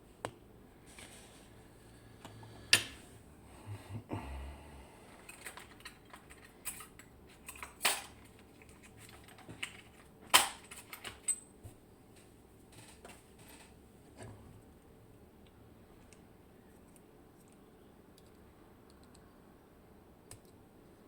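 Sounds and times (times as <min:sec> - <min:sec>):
small metal parts clinking: 0:05.3 - 0:11.5.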